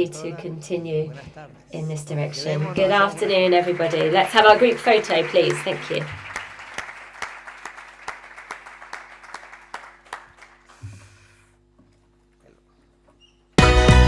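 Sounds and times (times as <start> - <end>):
audience applauding: 2.3 - 10.9.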